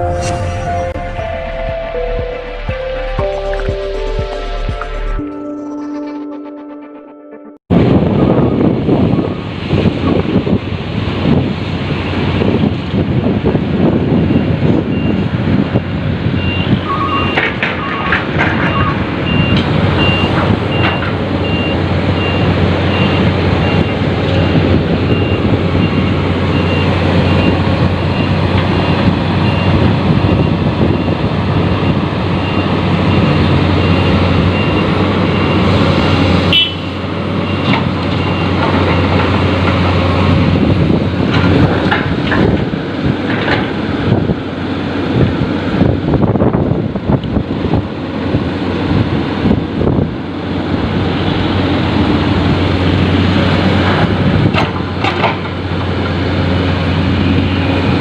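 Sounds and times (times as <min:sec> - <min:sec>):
heavy diesel machinery running: 0:07.7 - 0:58.0
warning alarm beeping: 0:18.7 - 0:36.8.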